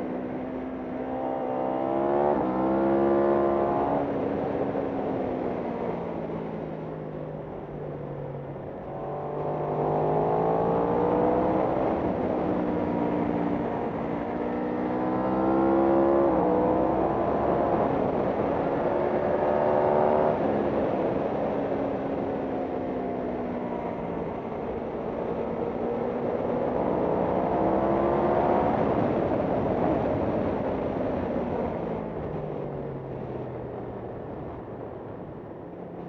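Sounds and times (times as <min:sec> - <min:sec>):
motorcycle engine accelerating: 0:08.8 - 0:34.6.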